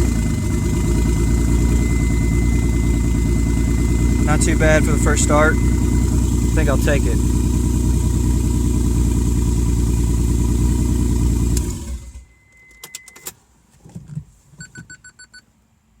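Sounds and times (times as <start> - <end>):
car engine running loud: 0.0 - 12.2
short electronic beeps: 1.3 - 6.0, 12.2 - 13.3, 14.6 - 15.4.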